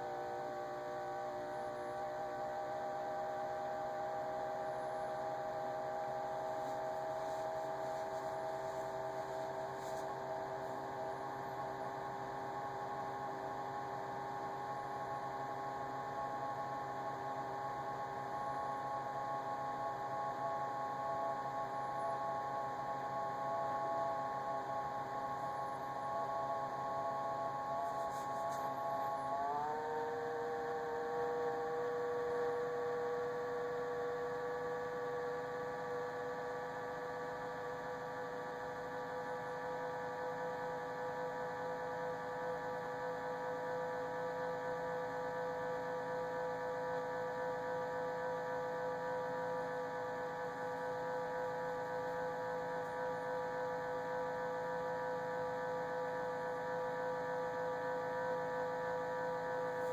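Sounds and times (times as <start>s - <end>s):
refrigerator whining hum: 0.0s - 59.9s.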